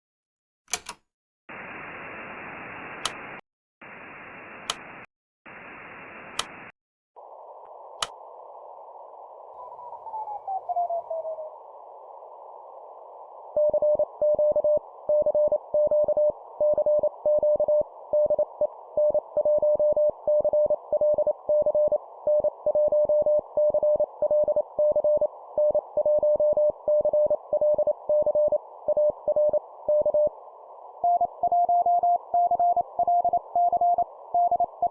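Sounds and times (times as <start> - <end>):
static and clicks: 0.7 - 9.6, 11.1 - 34.9
shortwave receiver hiss: 1.5 - 10.3, 11.1 - 34.9.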